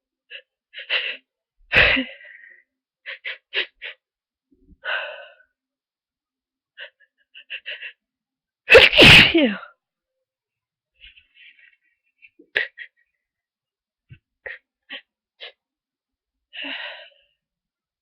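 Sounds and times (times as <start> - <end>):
person sneezing: 8.7 - 9.6.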